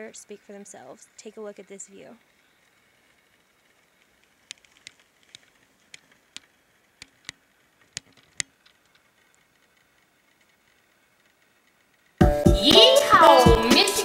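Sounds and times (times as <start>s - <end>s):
sharp clicks: 4.2s - 10.6s.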